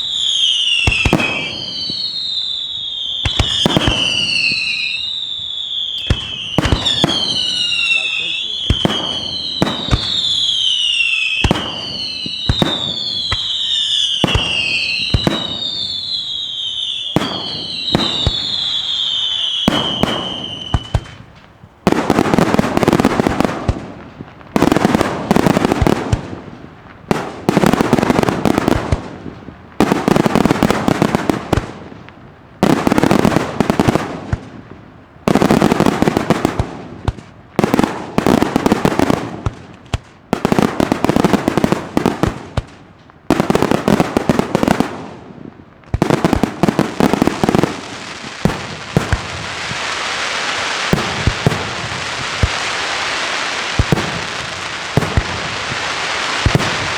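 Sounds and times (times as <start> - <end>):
firework whistles falling in pitch: 0.0 - 21.2
crackling firework salvos: 0.0 - 56.9
firework bangs: 0.0 - 56.9.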